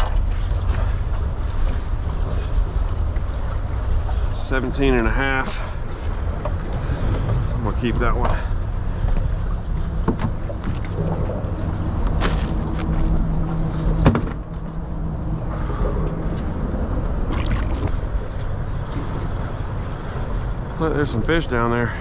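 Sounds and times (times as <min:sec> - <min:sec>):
boat motor humming: 0:00.0 - 0:22.0
sharp knocks and clatters: 0:14.0 - 0:14.6.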